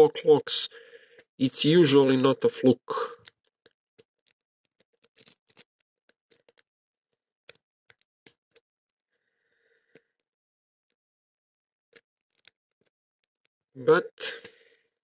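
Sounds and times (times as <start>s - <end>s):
lock picking metallic clicks: 4.9s - 5.6s.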